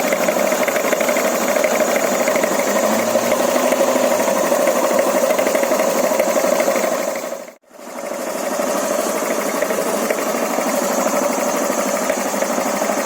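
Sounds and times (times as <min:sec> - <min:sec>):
fast steady knocking: 0:00.0 - 0:13.0
scooter engine idling: 0:00.0 - 0:13.0.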